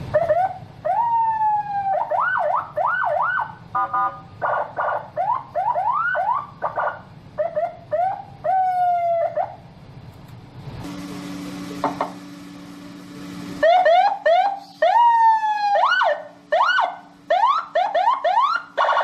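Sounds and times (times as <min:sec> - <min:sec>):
electronic siren wail and yelp: 0:00.1 - 0:09.6, 0:13.6 - 0:19.0.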